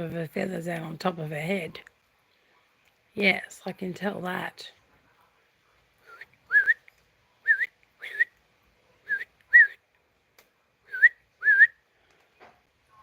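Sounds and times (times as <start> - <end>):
person whistling upward notes: 6.1 - 6.8, 7.5 - 8.4, 9.1 - 9.8, 10.9 - 11.8.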